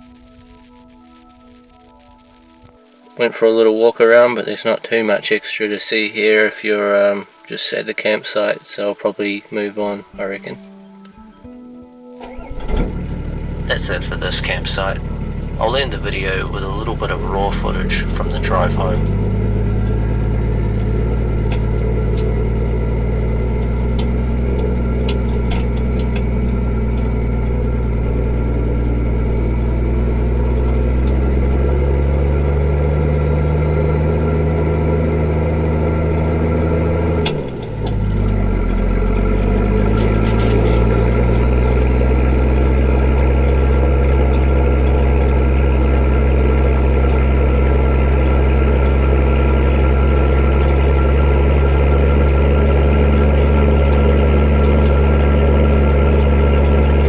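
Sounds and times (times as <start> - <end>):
diesel engine running: 12.2 - 57.0
engine click: 12.2 - 57.0.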